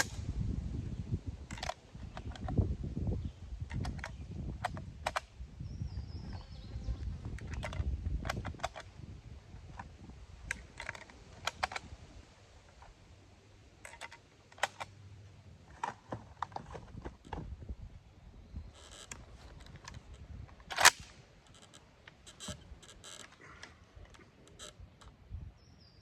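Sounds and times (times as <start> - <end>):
wind rumble on microphone: 0.0 - 12.9, 16.1 - 20.7, 24.6 - 25.9.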